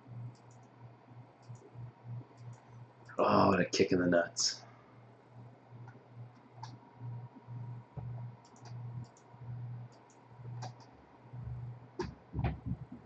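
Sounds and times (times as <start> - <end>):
low pulsing hum: 0.0 - 13.0
faint scattered clicks: 0.2 - 0.8, 1.4 - 3.2, 5.8 - 6.8, 8.0 - 10.9.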